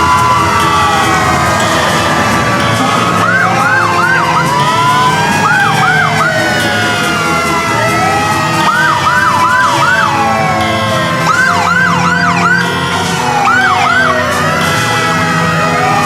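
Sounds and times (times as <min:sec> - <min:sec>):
fire truck sirens wailing: 0:00.0 - 0:16.0
siren yelp sweeps: 0:00.0 - 0:16.0.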